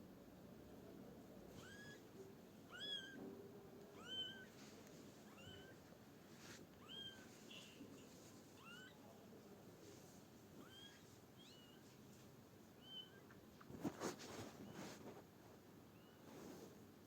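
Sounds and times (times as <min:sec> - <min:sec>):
cat meowing: 0:01.5 - 0:02.1, 0:02.7 - 0:03.2, 0:04.0 - 0:04.5, 0:05.3 - 0:05.8, 0:08.6 - 0:09.0, 0:10.6 - 0:11.8.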